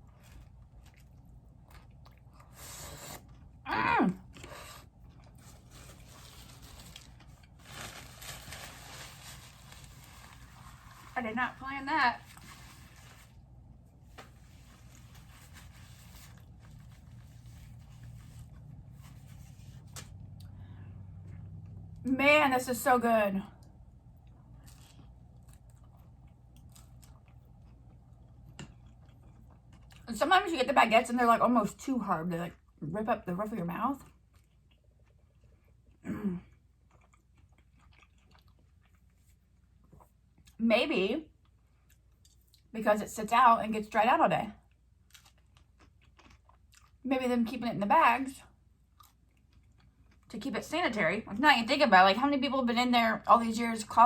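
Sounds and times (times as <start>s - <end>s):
chewing bread: 0.0s - 8.8s, 23.6s - 30.4s, 33.9s - 40.6s, 41.3s - 42.7s, 44.5s - 47.1s, 48.5s - 50.4s
low steady hum: 0.0s - 54.0s.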